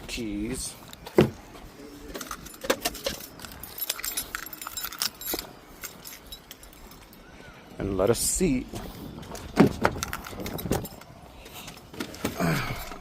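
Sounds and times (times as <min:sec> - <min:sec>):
keys jangling: 0:02.1 - 0:07.3, 0:09.3 - 0:11.8.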